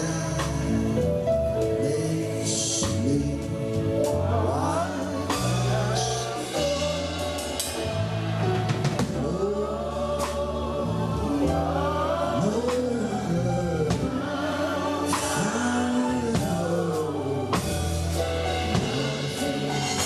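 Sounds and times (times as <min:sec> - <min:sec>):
choir singing: 0:00.0 - 0:20.0
sustained bass chords: 0:00.0 - 0:20.0.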